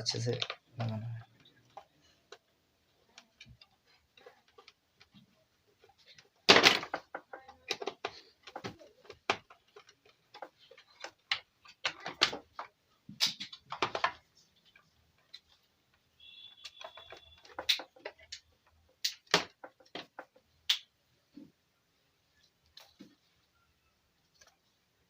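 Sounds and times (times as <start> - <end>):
screwdriver and plastic parts clicking: 3.1 - 5.2, 5.8 - 15.6, 16.6 - 20.8.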